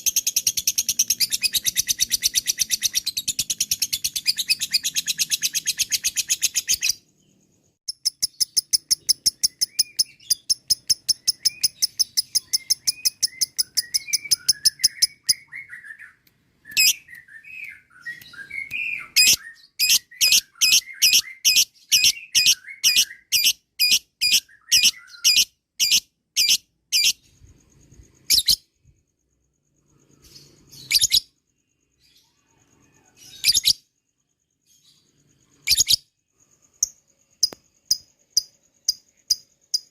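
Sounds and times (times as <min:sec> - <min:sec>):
soft bird twittering: 0:00.0 - 0:39.9
lovebird shrill repeated notes: 0:07.9 - 0:27.2.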